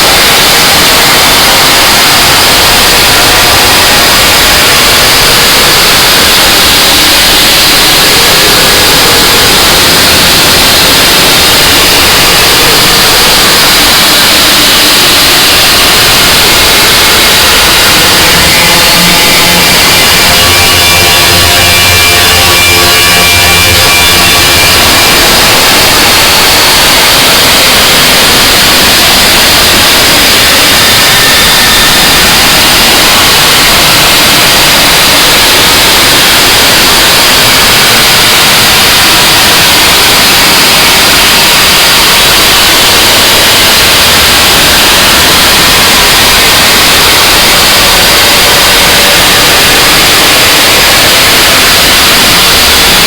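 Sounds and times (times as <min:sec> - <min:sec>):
harsh noise static: 0:00.0 - 0:53.0
faint sustained tones: 0:15.5 - 0:34.4.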